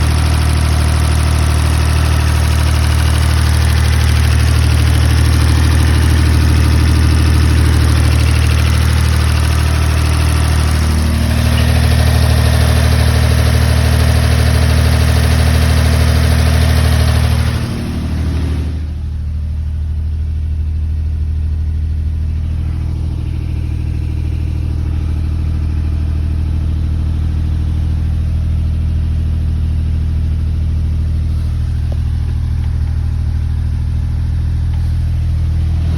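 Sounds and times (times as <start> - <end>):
engine running with low hum: 0.0 - 35.9.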